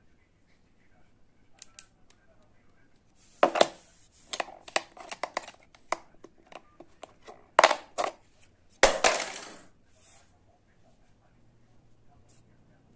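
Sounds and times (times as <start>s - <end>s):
hard objects clicking and knocking: 3.4s - 8.2s, 8.8s - 9.7s.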